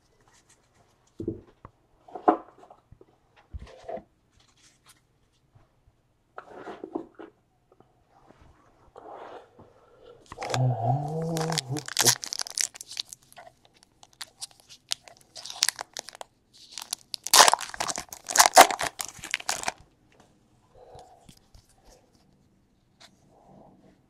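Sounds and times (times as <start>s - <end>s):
low voice hum: 10.4s - 12.0s
wrappers tearing and crinkling: 10.4s - 19.8s.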